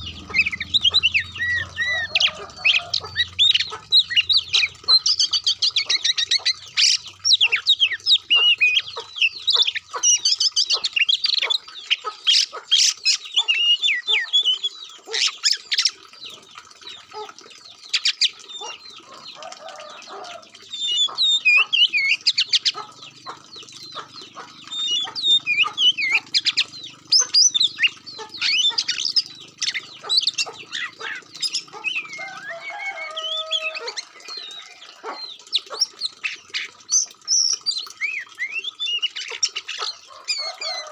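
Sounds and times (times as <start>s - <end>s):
bird song chirps and trills: 0.0s - 40.9s.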